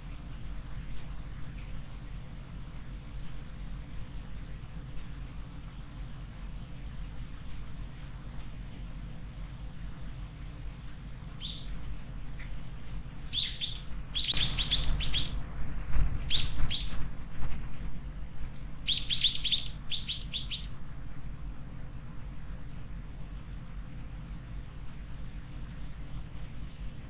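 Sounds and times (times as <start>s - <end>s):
small bird chirping: 11.4s - 11.8s, 13.2s - 15.4s, 16.2s - 17.0s, 18.8s - 20.8s.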